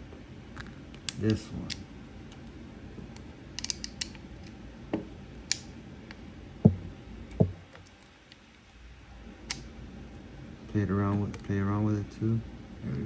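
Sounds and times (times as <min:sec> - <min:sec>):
metal parts clicking: 0:03.6 - 0:04.2
dull knocks: 0:06.6 - 0:07.7.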